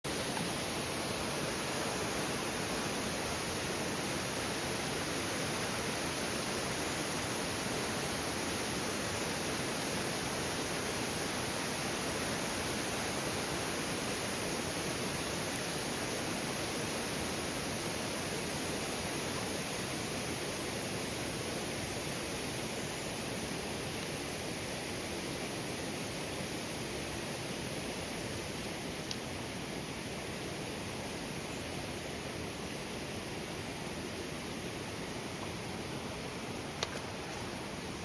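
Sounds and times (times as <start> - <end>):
waterfall rushing: 0.1 - 20.6, 31.9 - 38.0.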